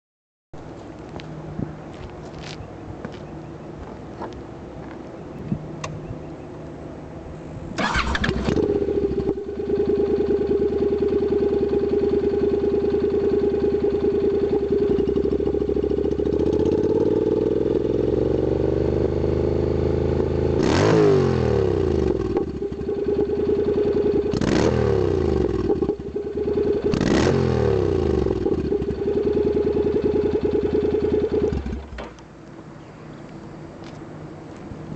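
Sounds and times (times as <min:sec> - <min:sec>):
motorcycle engine revving: 0:07.8 - 0:32.0.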